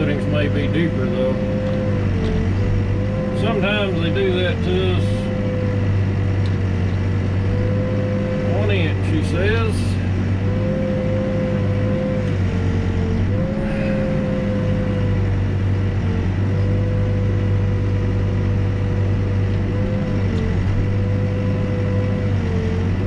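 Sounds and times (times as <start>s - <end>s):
backhoe diesel engine running: 0.0s - 23.0s
high-pitched hydraulic whine: 7.4s - 17.5s.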